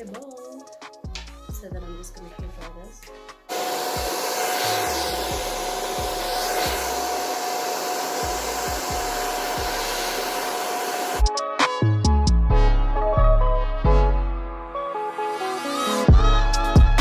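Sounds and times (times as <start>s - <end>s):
hair dryer running: 3.5s - 11.3s.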